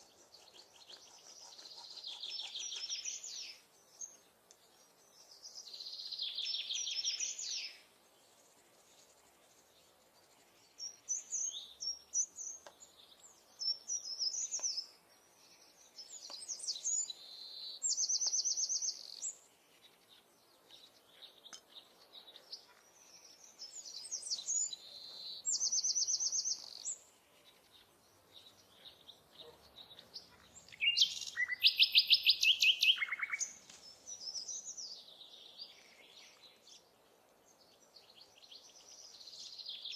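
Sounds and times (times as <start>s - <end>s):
songbird singing: 0.0s - 39.9s.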